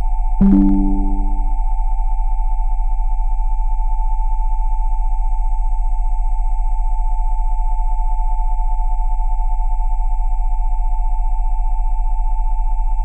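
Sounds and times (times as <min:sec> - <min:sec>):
deep low tone: 0:00.4 - 0:01.4
throbbing electronic sine tones: 0:00.4 - 0:01.4.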